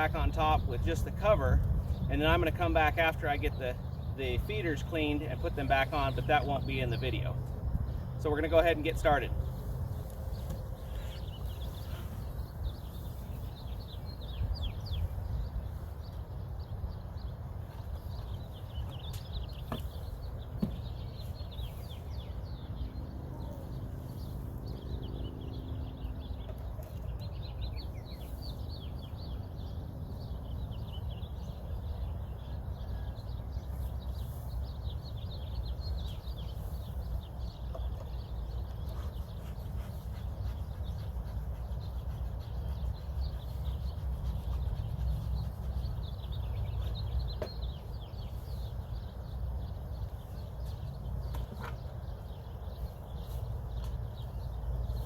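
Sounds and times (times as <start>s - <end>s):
small birds chirping: 0.0s - 55.0s.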